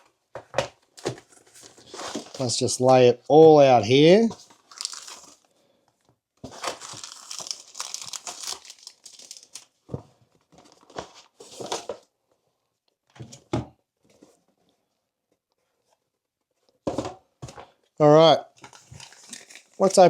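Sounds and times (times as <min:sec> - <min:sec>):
packaging crinkling and tearing: 0:04.4 - 0:05.4, 0:06.5 - 0:09.8, 0:18.7 - 0:19.9.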